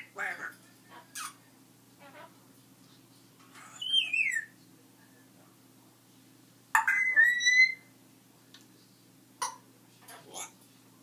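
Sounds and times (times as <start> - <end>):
parrot whistling: 3.6 - 4.6, 6.8 - 7.9.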